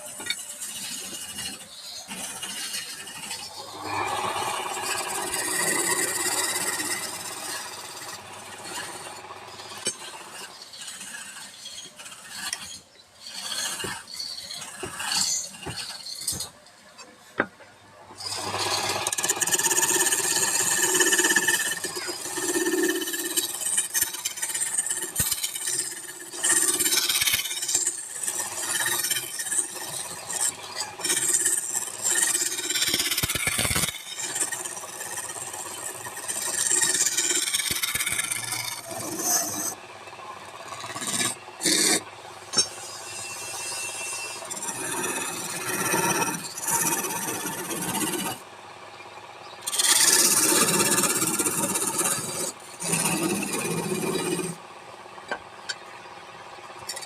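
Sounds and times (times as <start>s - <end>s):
lathe tool squeal: 0.0s - 17.1s, 18.2s - 54.6s, 56.8s - 57.0s
tool rasping wood on lathe: 0.0s - 17.5s, 18.1s - 48.5s, 49.6s - 54.6s.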